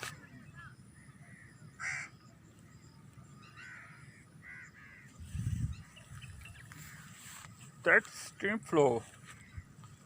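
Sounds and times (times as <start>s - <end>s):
faint crows cawing: 1.0s - 2.3s, 3.3s - 7.8s, 8.8s - 10.0s.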